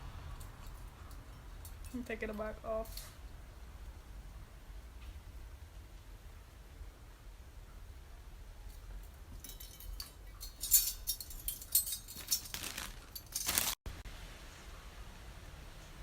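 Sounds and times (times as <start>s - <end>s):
metal earring parts clinking: 0.4s - 3.2s, 8.7s - 13.8s.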